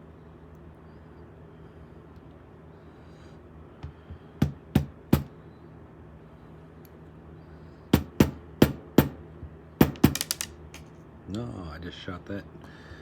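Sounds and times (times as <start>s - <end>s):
sharp knocks on lock cylinder: 3.8s - 5.3s, 8.0s - 10.8s.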